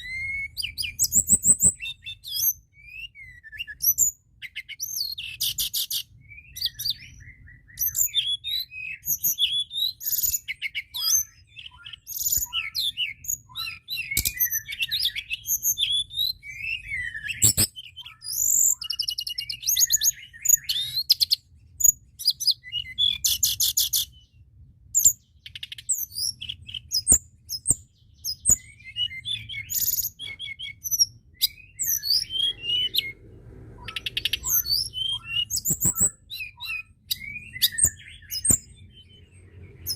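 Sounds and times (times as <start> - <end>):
bird singing: 0.0 - 39.9
faint low hum: 31.2 - 36.1.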